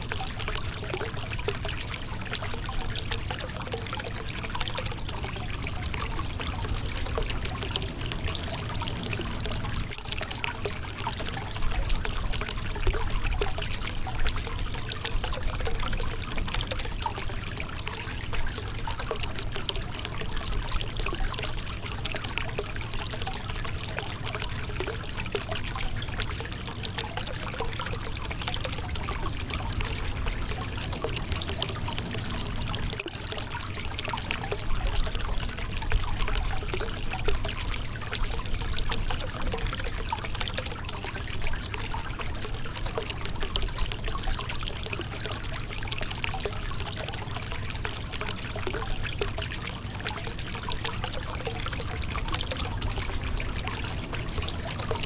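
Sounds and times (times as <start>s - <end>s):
river water running over rocks: 3.6s - 12.0s, 26.2s - 40.3s, 49.5s - 55.0s.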